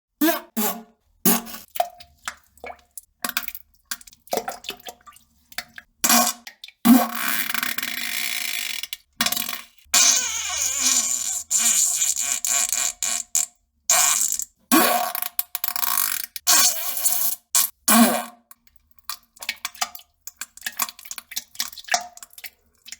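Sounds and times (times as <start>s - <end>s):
farting sounds: 9.5s - 15.1s.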